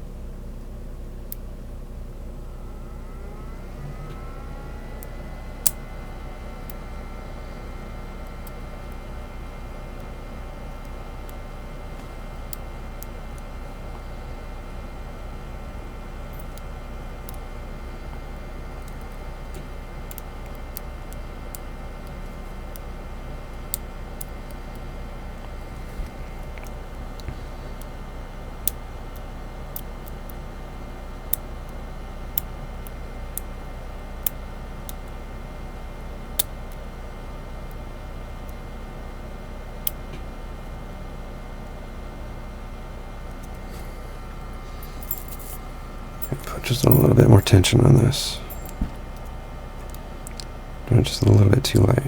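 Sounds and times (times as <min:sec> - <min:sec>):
steady hum: 0:00.0 - 0:52.0
rising whine: 0:02.4 - 0:06.6.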